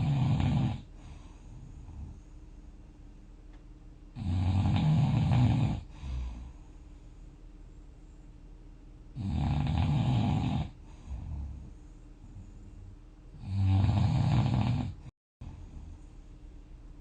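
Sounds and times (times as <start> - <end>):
person snoring: 0.0 - 2.1, 4.2 - 6.7, 9.2 - 11.7, 12.3 - 16.0
soft breath: 0.9 - 2.9, 5.8 - 8.6, 10.8 - 13.1.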